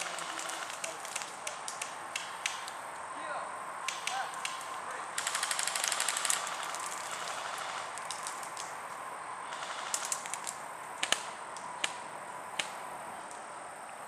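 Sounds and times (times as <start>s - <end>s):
airsoft guns firing: 3.9s - 7.9s.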